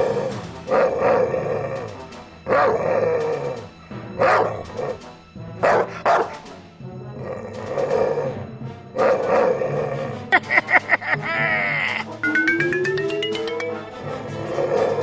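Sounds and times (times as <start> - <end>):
music: 0.0 - 15.0
dog barking: 2.5 - 3.4, 4.2 - 5.0, 5.6 - 6.4, 9.0 - 9.8.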